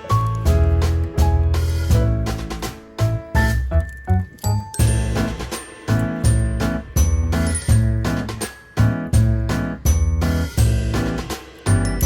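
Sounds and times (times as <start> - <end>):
pulsing bass line: 3.4 - 8.3, 9.2 - 12.0.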